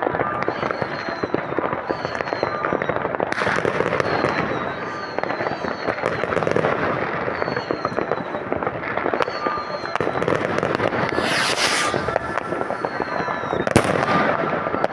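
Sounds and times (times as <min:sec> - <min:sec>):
hissing crackle: 0:11.0 - 0:13.1
firecracker cracks and bangs: 0:11.1 - 0:13.0
fireworks whistles falling: 0:11.1 - 0:13.1.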